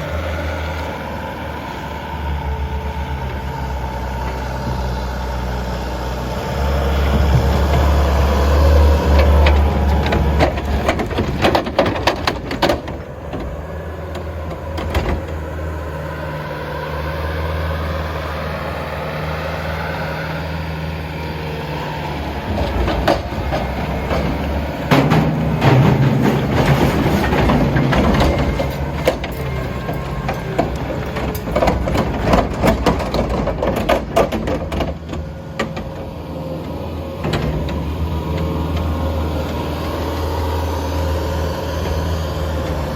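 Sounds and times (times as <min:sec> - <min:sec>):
skid steer engine revving: 0:00.0 - 0:42.9
metal clanks and knocks: 0:08.8 - 0:15.6, 0:22.4 - 0:39.6.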